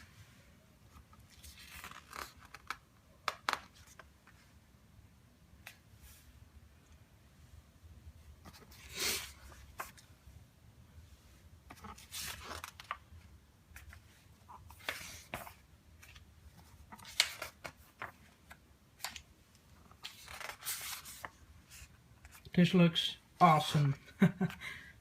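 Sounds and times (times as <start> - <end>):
paper pages rustling: 0.9 - 4.5, 8.4 - 10.1, 11.7 - 22.5.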